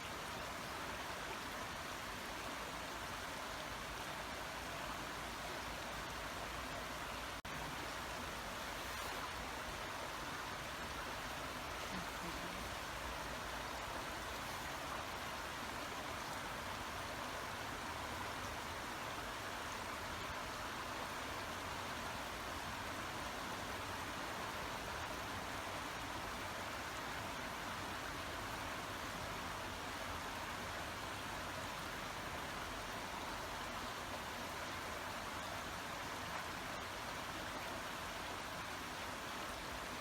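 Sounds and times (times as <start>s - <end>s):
brook water flowing: 0.0s - 40.0s.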